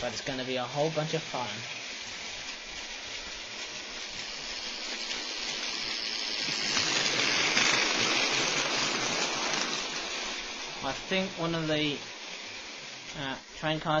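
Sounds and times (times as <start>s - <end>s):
heavy rain pouring: 6.4s - 11.6s.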